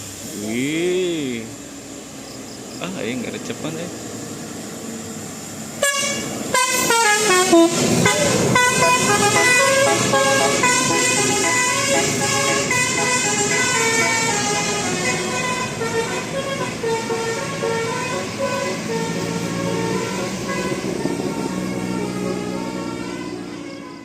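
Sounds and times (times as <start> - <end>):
multi-tone horn playing a melody: 5.8 - 24.0.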